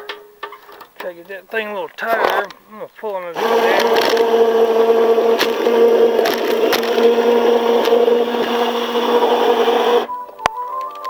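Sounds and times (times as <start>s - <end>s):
electric winch motor running: 3.3s - 10.1s.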